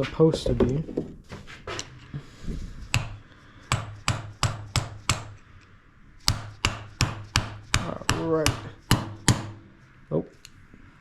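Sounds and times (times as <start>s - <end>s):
hammer taps: 2.9s - 5.4s, 6.2s - 9.7s.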